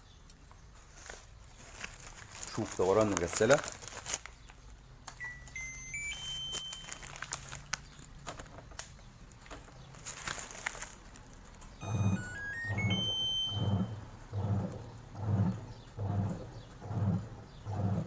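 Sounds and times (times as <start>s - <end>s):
rising beep tones: 5.2s - 7.0s, 11.8s - 14.0s
washing machine motor hum: 11.4s - 18.0s.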